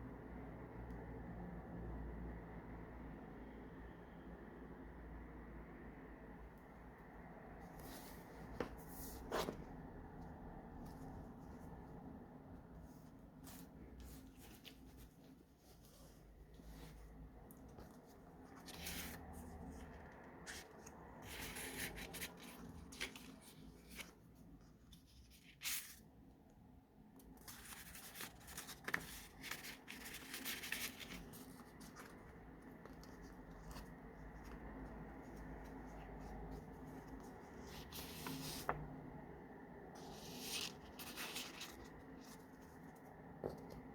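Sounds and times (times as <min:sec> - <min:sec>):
paper pages rustling: 0:07.6 - 0:12.0, 0:12.7 - 0:26.2, 0:27.1 - 0:39.2, 0:39.9 - 0:43.9
soft taps on paper: 0:42.8 - 0:43.9.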